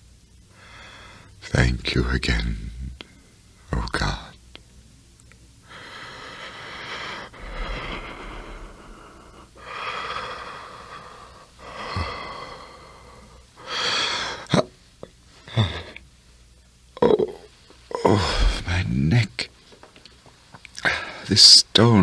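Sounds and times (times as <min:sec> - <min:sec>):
man breathing heavily: 0:05.7 - 0:14.4, 0:18.1 - 0:18.8.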